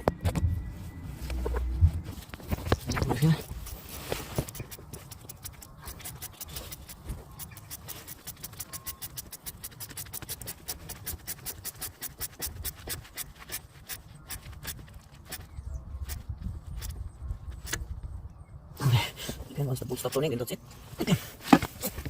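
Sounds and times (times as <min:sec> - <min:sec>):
hand ratchet clicking: 0:04.5 - 0:15.4.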